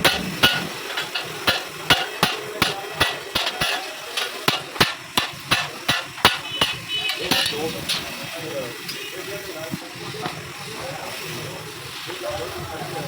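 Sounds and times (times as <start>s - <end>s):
hammer striking metal: 0.0s - 8.1s.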